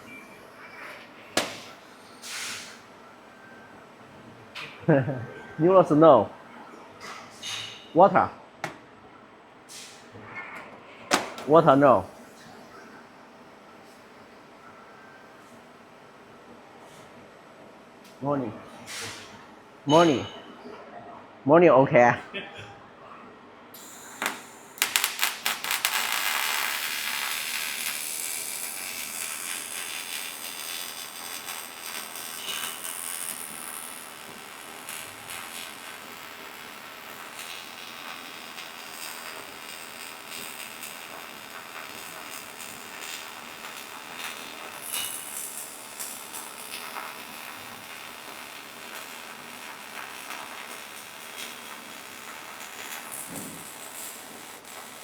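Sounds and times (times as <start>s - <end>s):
welding arc crackling: 1.4s - 2.0s, 11.2s - 12.1s, 23.8s - 55.0s.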